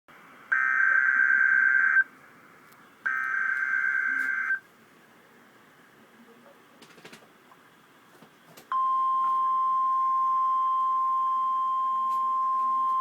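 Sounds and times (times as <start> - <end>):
screeching digital data tones: 0.5 - 2.1, 3.1 - 4.6.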